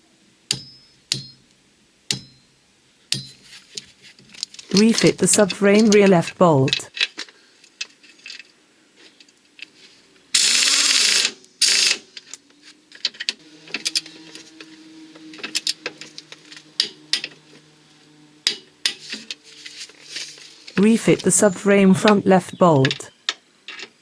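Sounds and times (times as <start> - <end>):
power tool whirring: 10.4 - 12.1.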